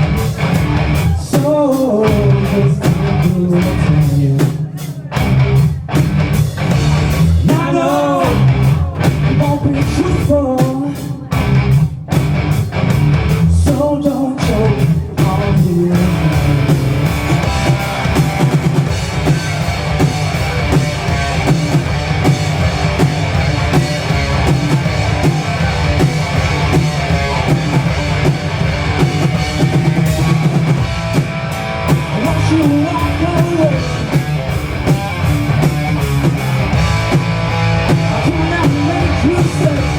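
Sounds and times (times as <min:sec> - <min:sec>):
rock band playing live: 0:00.0 - 0:39.9
person singing: 0:07.4 - 0:11.4.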